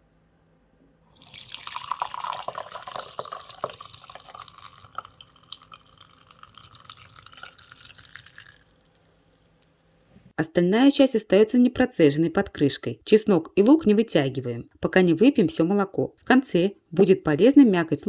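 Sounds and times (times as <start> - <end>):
milk pouring into a glass: 1.1 - 9.1.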